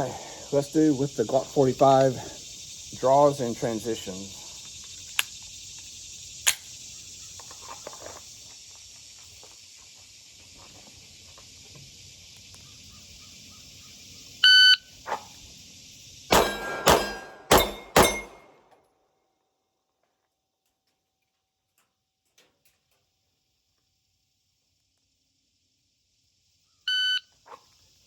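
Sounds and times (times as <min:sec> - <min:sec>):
crickets buzzing: 0:00.0 - 0:18.5, 0:21.9 - 0:28.0
pistol shots: 0:16.3 - 0:18.6
shot timer beep: 0:26.9 - 0:27.2.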